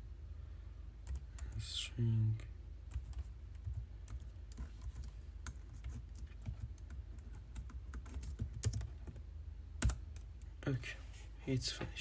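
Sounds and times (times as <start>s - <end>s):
typing on computer keyboard: 2.9s - 9.2s, 9.8s - 10.3s.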